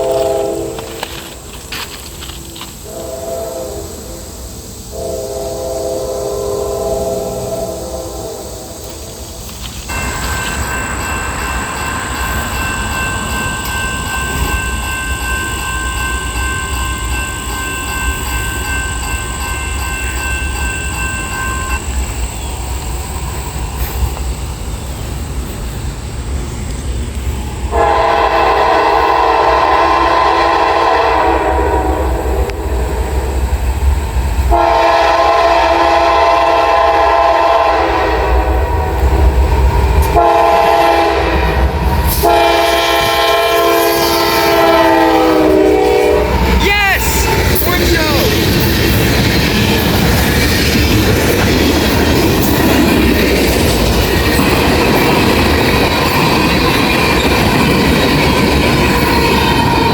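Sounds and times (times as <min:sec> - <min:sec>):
locomotive air horn: 0:00.0 - 0:01.3, 0:02.8 - 0:04.3, 0:04.9 - 0:08.8, 0:27.7 - 0:32.5, 0:34.5 - 0:38.7, 0:40.1 - 0:48.0
freight train rumbling: 0:00.0 - 0:59.9.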